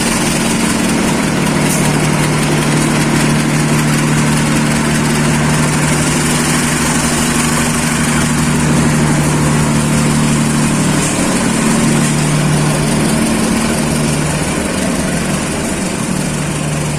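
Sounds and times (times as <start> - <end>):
diesel locomotive engine idling: 0.0 - 16.9.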